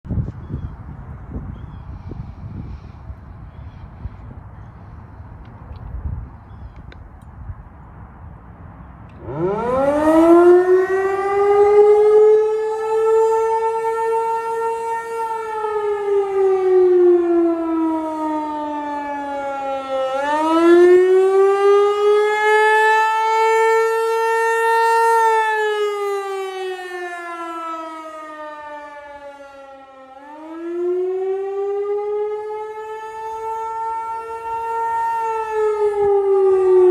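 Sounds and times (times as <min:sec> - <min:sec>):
warning siren wailing: 0:08.6 - 0:36.9.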